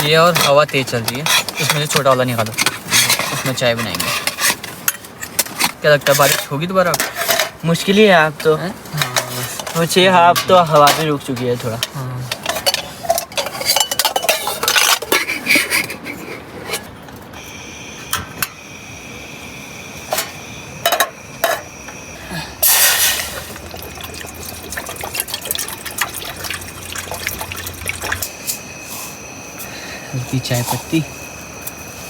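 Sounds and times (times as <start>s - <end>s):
metal cookware clattering: 0.0s - 7.6s, 9.0s - 16.9s, 22.6s - 28.3s
water pouring into a pot: 22.6s - 28.3s.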